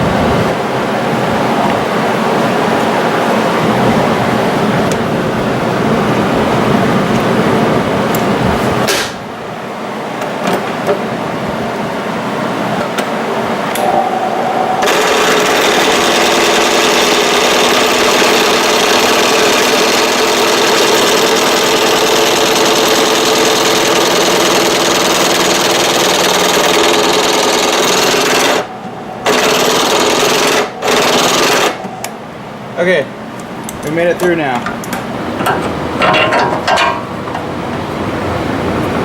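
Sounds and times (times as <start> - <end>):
electric drill boring through steel: 14.8 - 31.9.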